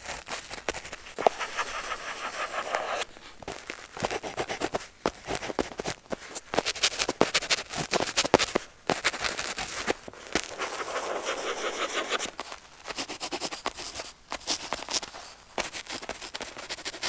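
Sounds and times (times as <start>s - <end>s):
pen scratching on paper: 1.2s - 3.1s, 10.5s - 14.7s.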